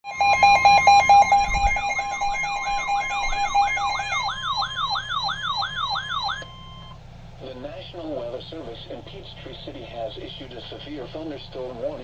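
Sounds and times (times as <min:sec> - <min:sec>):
rising siren-like sweep: 0:00.0 - 0:06.8
pulsing tone: 0:00.0 - 0:07.0
steady alarm tone: 0:00.0 - 0:07.0.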